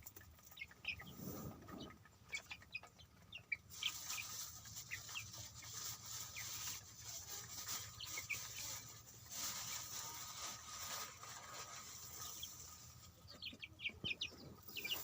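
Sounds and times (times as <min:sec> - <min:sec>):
chicks peeping: 0:00.0 - 0:15.0.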